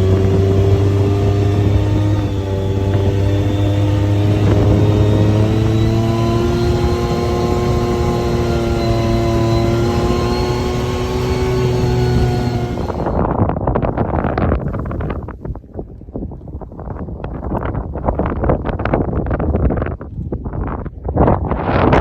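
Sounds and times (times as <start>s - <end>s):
car engine running: 0.0s - 13.2s.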